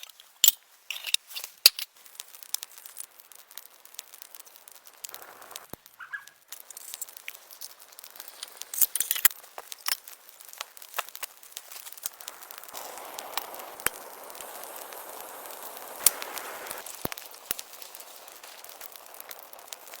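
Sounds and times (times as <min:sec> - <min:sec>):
campfire crackling: 0:00.1 - 0:20.0
steady hiss: 0:00.7 - 0:20.0
wood pops: 0:08.1 - 0:20.0.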